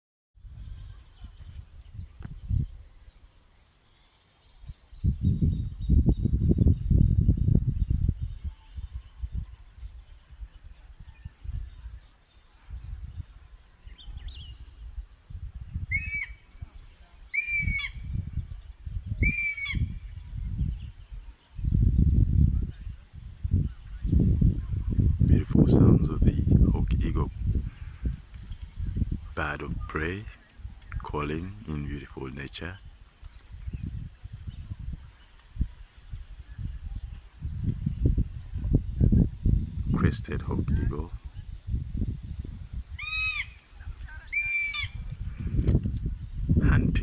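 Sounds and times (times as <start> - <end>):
wind noise on microphone: 0.4 - 3.6, 4.5 - 47.0
hawk-eagle whistled calls: 15.9 - 16.5, 17.3 - 18.1, 19.2 - 20.1, 43.0 - 43.6, 44.2 - 45.0.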